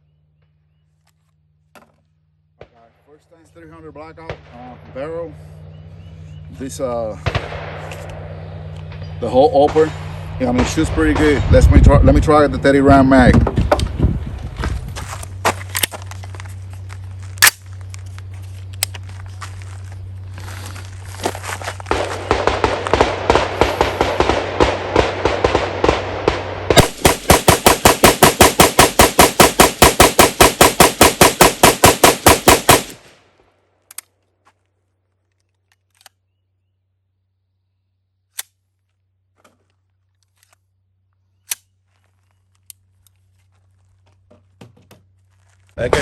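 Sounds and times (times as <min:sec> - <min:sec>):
rifle rapid fire: 0:21.9 - 0:33.1.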